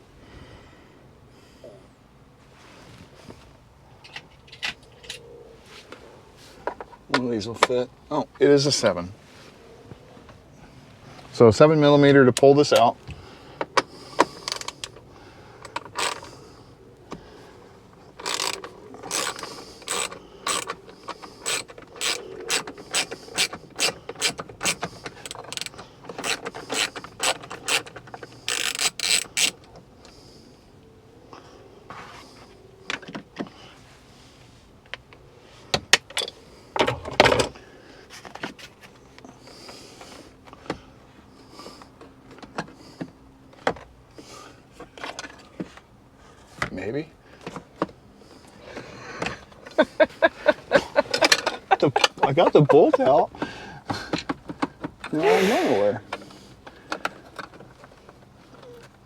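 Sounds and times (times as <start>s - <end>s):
ratchet wrench clicking: 15.6s - 16.3s, 18.2s - 29.6s.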